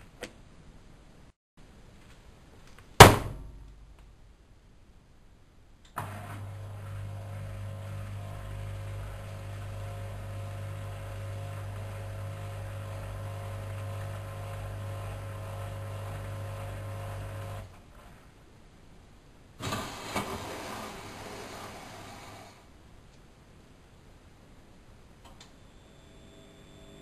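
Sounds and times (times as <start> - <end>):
washing machine electric hum: 6.0 - 18.3, 25.4 - 27.0.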